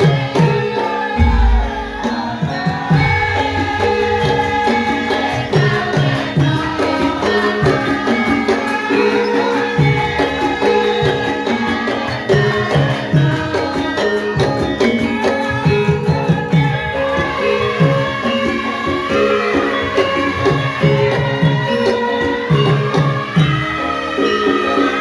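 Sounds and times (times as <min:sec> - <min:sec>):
ringing metallophone tones: 0:00.0 - 0:25.0
hand drum strokes: 0:01.1 - 0:08.9
gong tones: 0:01.2 - 0:06.1.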